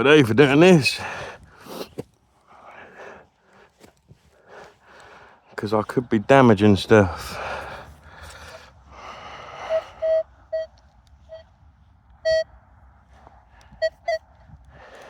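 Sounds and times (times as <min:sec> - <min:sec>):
metal detector beeps: 0:13.8 - 0:14.2.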